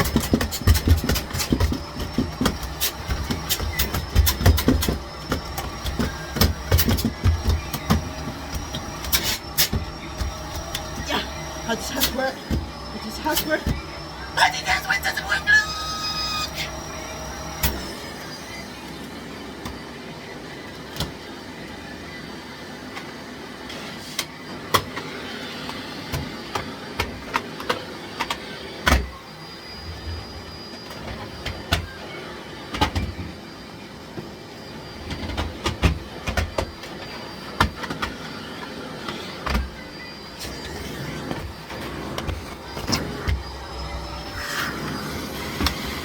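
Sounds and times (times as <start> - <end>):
vacuum clicks and knocks on floor: 0.0 - 14.4, 35.0 - 39.8, 40.4 - 46.0
vacuum cleaner running: 0.0 - 46.0.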